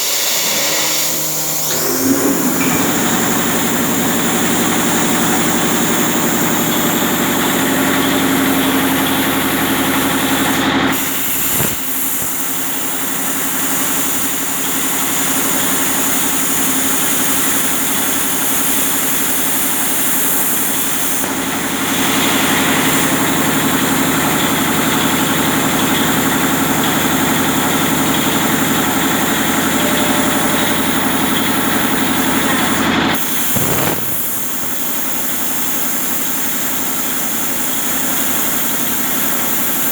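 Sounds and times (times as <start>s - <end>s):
machine hum: 0.0s - 13.2s, 29.2s - 34.8s
plasma cutter arc hiss: 0.0s - 23.4s, 30.1s - 39.9s.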